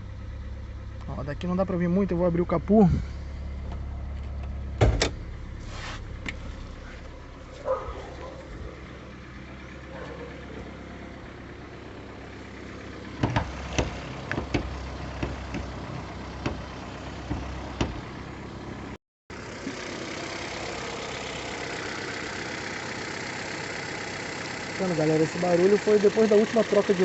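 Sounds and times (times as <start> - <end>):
car engine idling: 0.0 - 27.0
engine tappet ticking: 13.1 - 18.1
loud irregular knocks and clicks: 13.2 - 18.1.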